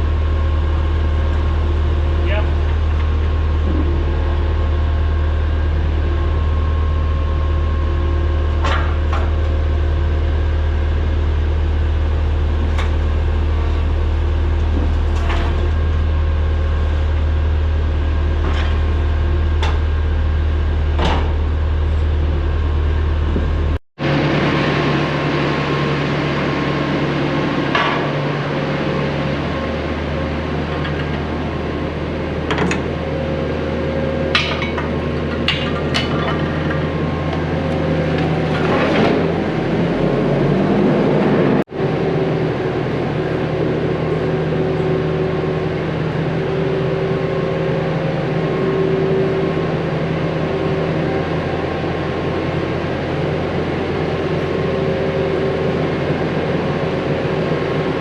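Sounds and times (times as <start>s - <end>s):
diesel engine running: 0.0s - 58.0s
metal clanks and knocks: 8.6s - 9.5s, 32.5s - 33.0s, 34.3s - 37.4s.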